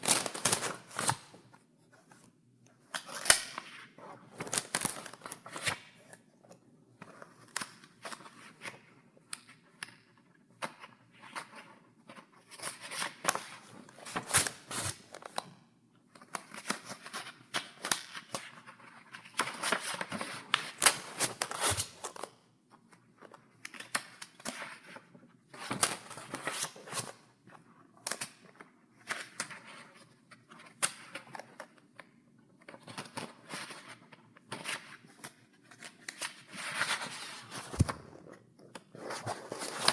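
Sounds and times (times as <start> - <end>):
paper pages turning: 35.8 - 39.9.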